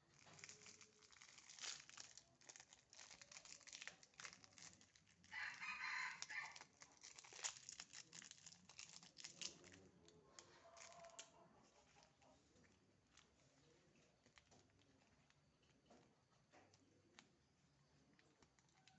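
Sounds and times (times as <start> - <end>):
soft crinkling and clicking: 0.0 - 18.9
rooster crowing: 5.3 - 6.6.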